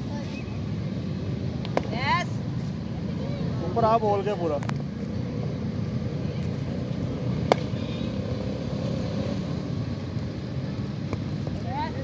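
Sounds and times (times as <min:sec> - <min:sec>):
low rumble of background noise: 0:00.0 - 0:12.0
cricket bat striking ball: 0:07.4 - 0:07.8.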